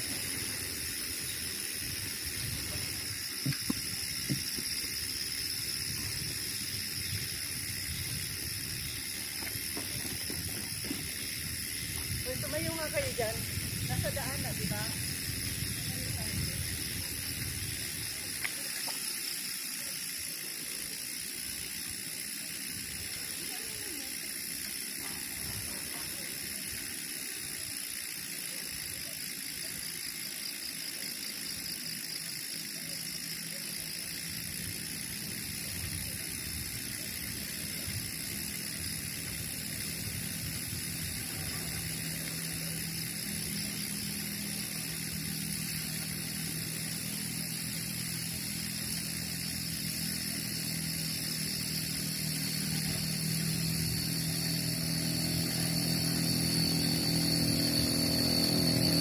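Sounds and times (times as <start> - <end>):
bike freehub ratchet clicking: 0.0 - 59.0
wind noise: 1.3 - 18.2
tyre noise: 1.7 - 19.1.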